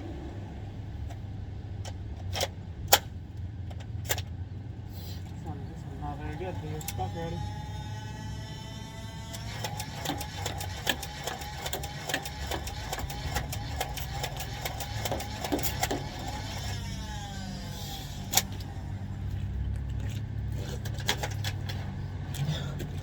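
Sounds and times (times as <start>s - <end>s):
motor whine: 5.9s - 19.7s.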